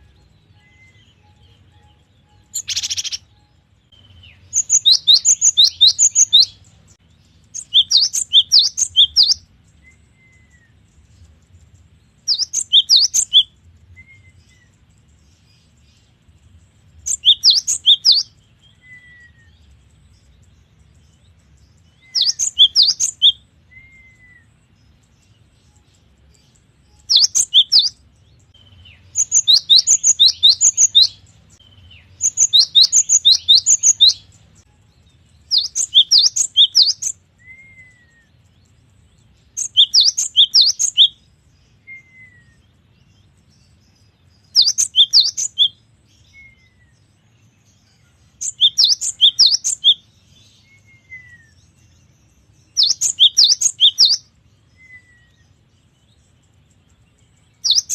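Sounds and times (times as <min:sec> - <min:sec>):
bird singing sharp high notes: 0:00.0 - 0:06.6, 0:28.7 - 0:34.3.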